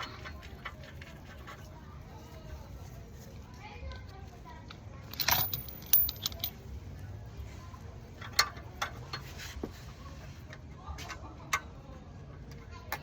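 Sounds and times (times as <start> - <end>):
metallic clinks of hand tools: 5.1 - 6.5.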